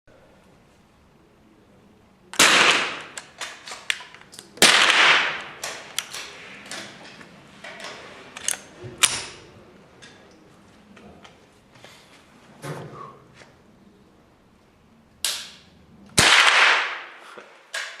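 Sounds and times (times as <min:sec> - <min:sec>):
faint sharp cracks and clicks: 0:02.3 - 0:09.4, 0:15.1 - 0:18.0
loud echoing gunshots: 0:02.4 - 0:03.2, 0:04.6 - 0:06.5, 0:16.2 - 0:17.3.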